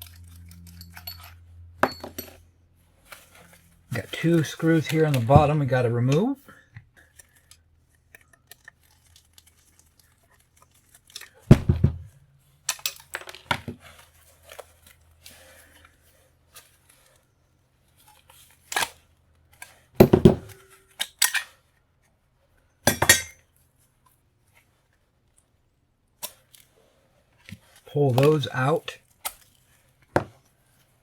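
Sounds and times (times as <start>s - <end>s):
metal parts knocking and clanking: 0.3s - 2.4s, 20.0s - 21.4s, 22.9s - 23.4s.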